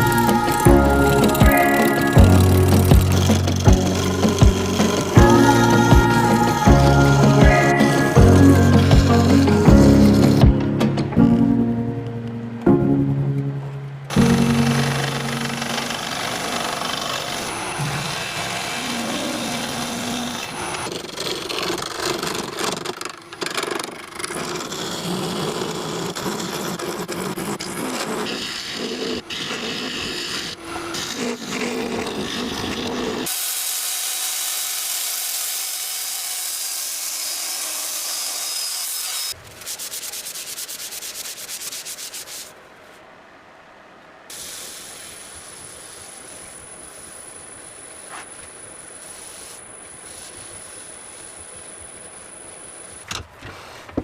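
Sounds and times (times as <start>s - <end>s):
rapid fine ticking: 0.0s - 11.0s, 14.1s - 33.3s
tools scraping wood: 0.0s - 11.0s, 14.1s - 33.7s
power tool high hiss: 14.1s - 20.9s, 28.3s - 41.3s, 44.3s - 52.0s.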